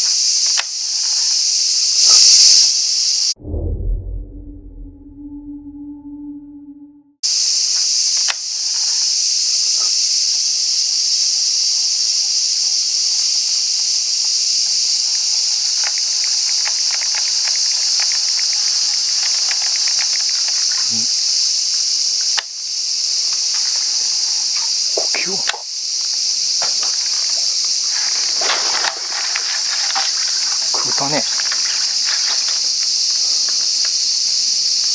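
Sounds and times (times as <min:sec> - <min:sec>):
insects chorus: 0:00.0 - 0:03.4, 0:07.2 - 0:34.9
brief low sound: 0:03.4 - 0:07.2
faint rapid ticks: 0:15.6 - 0:20.9.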